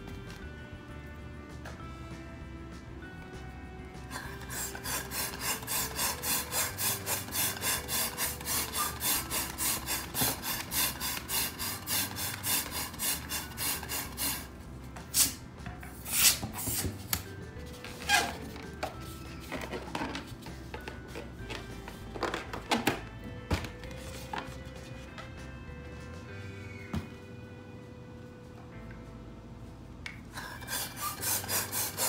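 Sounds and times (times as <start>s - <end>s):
background music: 0.0s - 32.0s
rasping rubbing: 4.1s - 14.5s, 30.4s - 32.0s.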